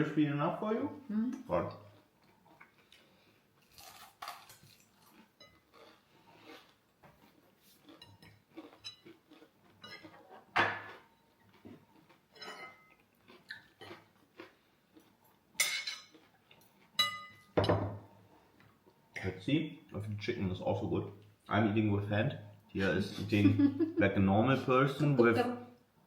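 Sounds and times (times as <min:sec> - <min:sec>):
cutlery clinking on plates: 0:09.8 - 0:11.1, 0:12.3 - 0:13.0, 0:15.6 - 0:16.2, 0:17.0 - 0:18.0.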